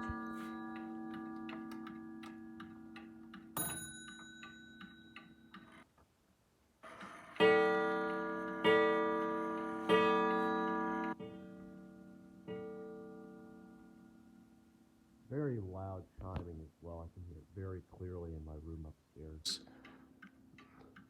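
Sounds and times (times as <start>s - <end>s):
mantel clock ticking: 0.0s - 5.8s, 7.3s - 11.2s.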